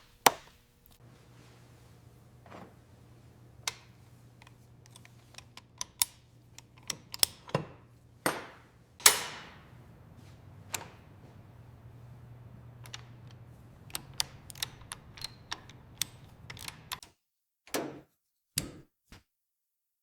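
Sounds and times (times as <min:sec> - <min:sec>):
tools clicking and tapping: 0:00.0 - 0:01.0, 0:03.7 - 0:09.4, 0:12.8 - 0:17.1
low steady hum: 0:07.9 - 0:17.0.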